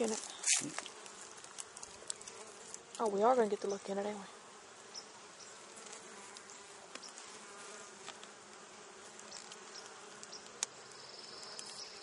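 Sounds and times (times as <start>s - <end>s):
honeybees buzzing: 0.0s - 12.0s
faint ticks: 0.7s - 3.2s, 5.8s - 7.2s, 9.2s - 12.0s.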